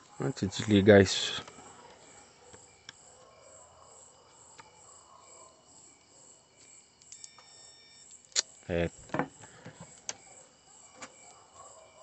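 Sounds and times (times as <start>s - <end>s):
faint insect-like chirping: 0.0s - 12.0s.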